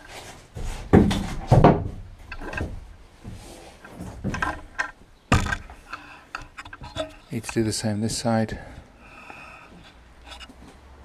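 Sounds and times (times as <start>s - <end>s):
knocks of hard objects handled: 0.9s - 7.6s.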